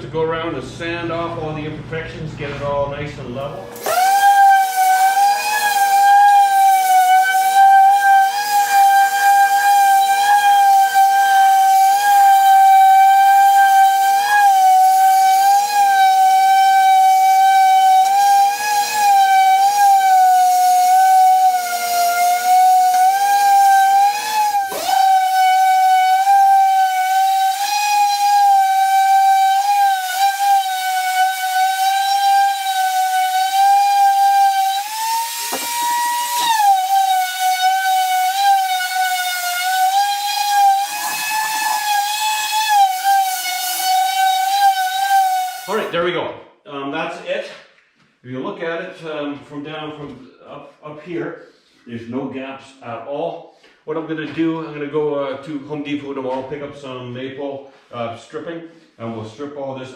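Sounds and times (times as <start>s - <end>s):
electric sander whine: 3.6s - 45.9s.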